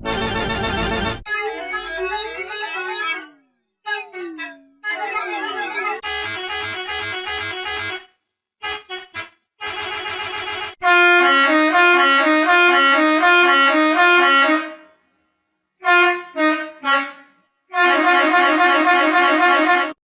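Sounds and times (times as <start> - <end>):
musical bus horn playing a tune: 0.0 - 1.3, 6.0 - 14.9, 15.8 - 20.0.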